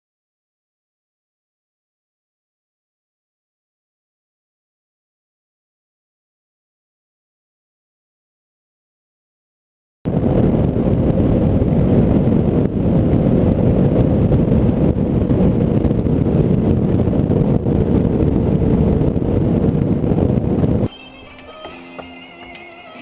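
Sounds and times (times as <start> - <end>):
wind rush on microphone: 10.1 - 20.9.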